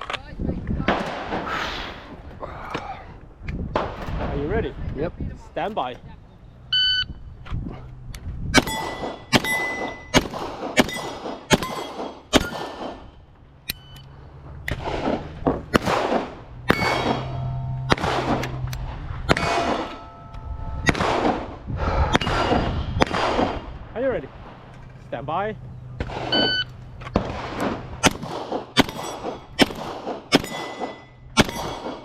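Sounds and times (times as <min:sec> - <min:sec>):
steel plates ringing: 0:08.6 - 0:10.2, 0:16.7 - 0:21.0, 0:28.8 - 0:29.6, 0:30.4 - 0:31.9
pistol shots: 0:08.6 - 0:13.1, 0:14.7 - 0:17.3, 0:17.9 - 0:18.6, 0:20.9 - 0:21.5, 0:22.2 - 0:23.6, 0:27.1 - 0:32.0.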